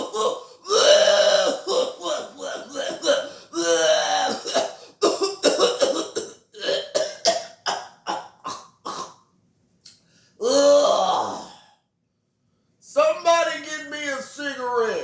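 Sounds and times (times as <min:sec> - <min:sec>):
old man coughing: 0:00.0 - 0:03.3, 0:04.2 - 0:09.2
old man's voice: 0:12.8 - 0:15.0.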